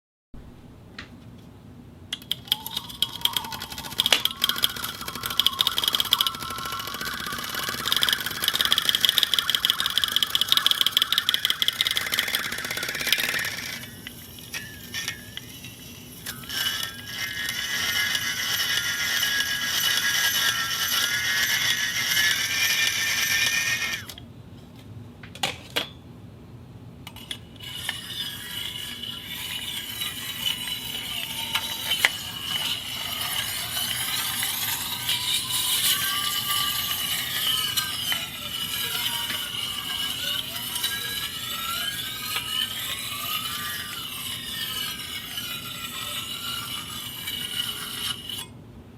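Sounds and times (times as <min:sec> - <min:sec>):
clicks: 0:02.1 - 0:15.5
high squealing friction: 0:02.3 - 0:24.2, 0:27.2 - 0:48.5
objects scraping on concrete: 0:02.5 - 0:24.1, 0:27.1 - 0:48.5.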